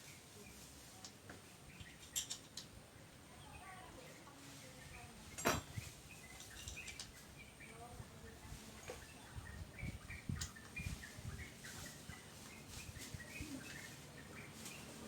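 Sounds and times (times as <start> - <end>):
bird-like chirps: 3.3 - 15.0.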